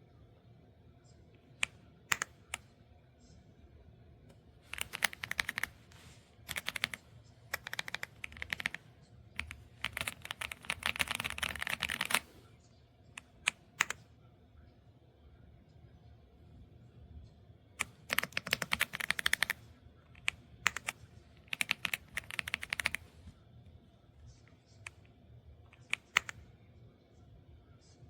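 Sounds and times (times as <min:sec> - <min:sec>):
mechanical keyboard typing: 0:01.6 - 0:02.6, 0:04.7 - 0:05.8, 0:06.5 - 0:08.8, 0:09.4 - 0:12.3, 0:17.8 - 0:19.6, 0:20.2 - 0:23.1, 0:25.8 - 0:26.4.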